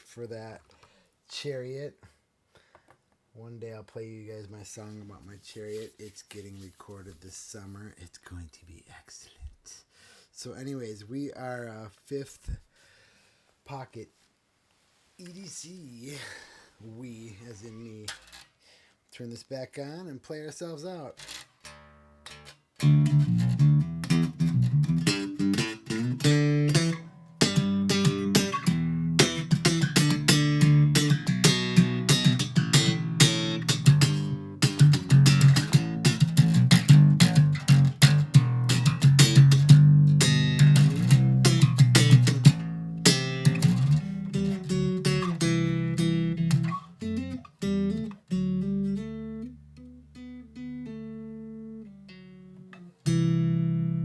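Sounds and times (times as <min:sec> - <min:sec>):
plucked guitar music: 0:21.2 - 0:54.0.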